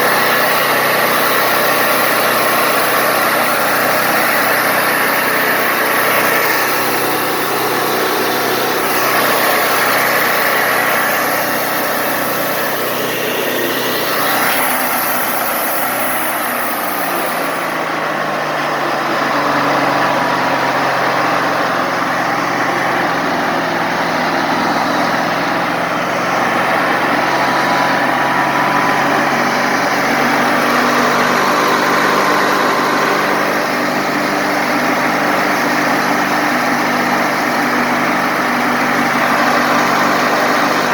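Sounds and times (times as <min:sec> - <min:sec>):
band sawmill running: 0:00.0 - 0:40.9.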